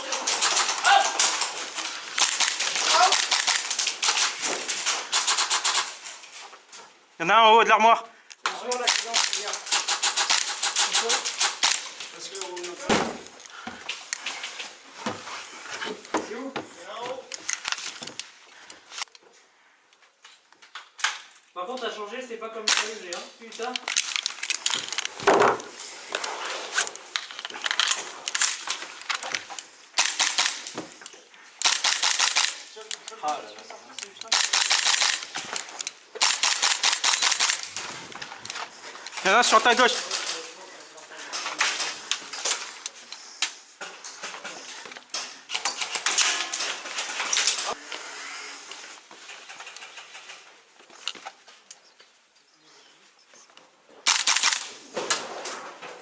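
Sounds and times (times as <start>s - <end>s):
rustling: 0.0s - 7.2s, 8.2s - 20.5s, 22.8s - 56.0s
sharp clicks: 0.1s - 6.2s, 8.3s - 13.5s, 27.4s - 30.8s, 31.6s - 39.8s, 54.1s - 54.7s.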